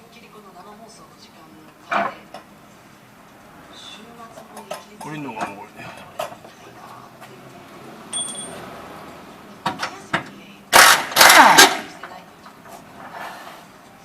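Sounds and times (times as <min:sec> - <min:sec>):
ringing clink: 0:08.1 - 0:08.6
loud burst of mechanical noise: 0:10.7 - 0:12.0
sharp metallic clicks: 0:10.7 - 0:12.0.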